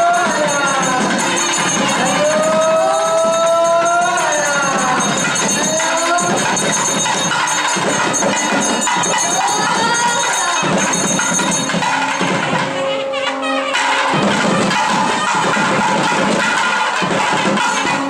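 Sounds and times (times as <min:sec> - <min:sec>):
crowd hubbub: 0:00.0 - 0:18.0
devotional temple music: 0:00.0 - 0:18.0.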